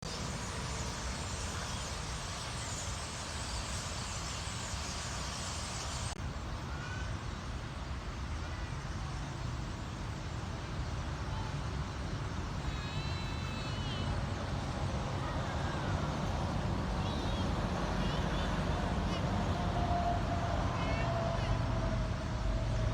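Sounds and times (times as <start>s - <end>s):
highway traffic rumble: 0.0s - 22.9s
flock of birds chattering: 12.3s - 22.6s
whistled bird calls: 12.6s - 14.2s.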